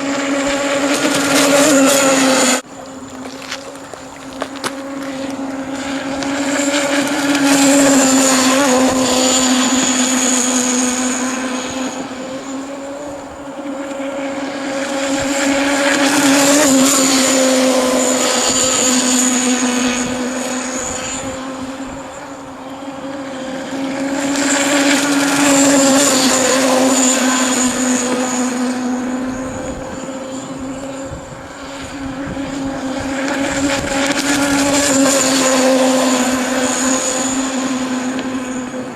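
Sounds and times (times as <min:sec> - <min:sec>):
model boat engine passing: 0:00.0 - 0:38.9.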